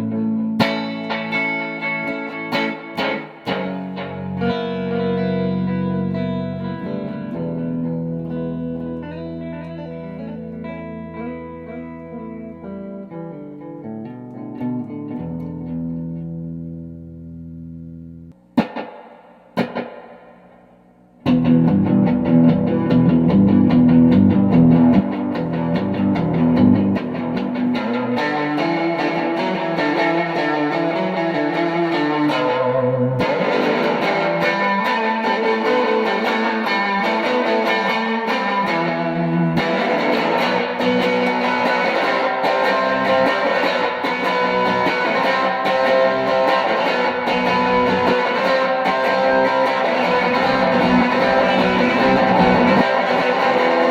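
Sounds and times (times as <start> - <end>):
electric guitar with tape delay: 0.0 - 53.9.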